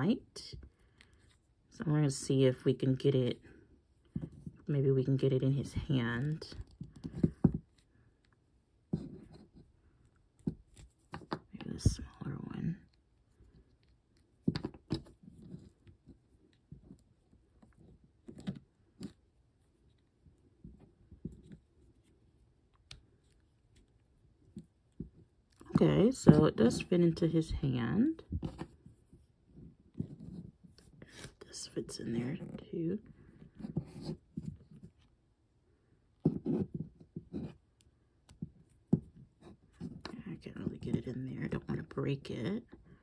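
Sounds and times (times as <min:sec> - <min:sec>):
knocks and rubbing of plastic: 0:06.2 - 0:07.8, 0:36.2 - 0:37.6.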